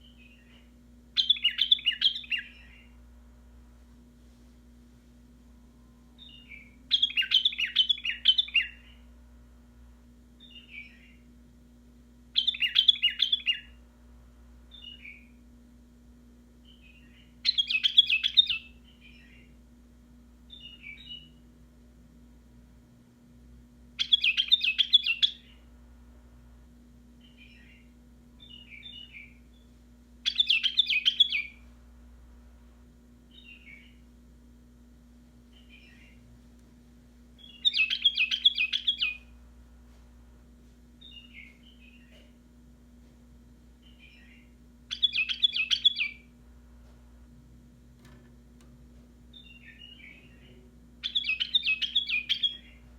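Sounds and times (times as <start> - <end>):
bird singing: 0.0 - 3.0, 6.0 - 9.1, 10.4 - 11.3, 12.3 - 13.8, 14.7 - 15.4, 16.6 - 19.6, 20.5 - 21.5, 24.0 - 25.7, 27.2 - 31.7, 33.3 - 34.1, 35.5 - 36.2, 37.4 - 39.4, 41.0 - 42.4, 43.8 - 46.4, 49.3 - 52.9
bird chirpy notes: 1.2 - 2.9, 6.2 - 9.0, 12.4 - 13.8, 30.3 - 31.6, 37.4 - 39.3, 43.9 - 46.3, 49.3 - 52.9.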